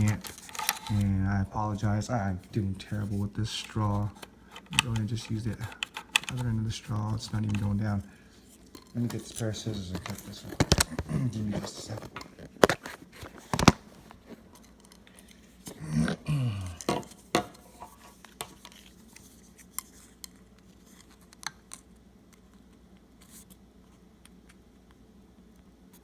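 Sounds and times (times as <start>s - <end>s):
handling noise: 0.0s - 15.8s
man's voice murmuring: 0.9s - 4.2s, 9.0s - 12.2s, 15.7s - 16.9s.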